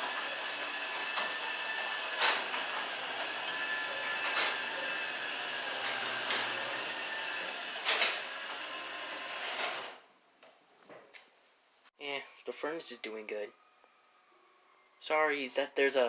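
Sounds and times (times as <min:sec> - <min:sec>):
garage door opener rattling: 0:00.0 - 0:10.0
garage door shutting: 0:00.0 - 0:10.0.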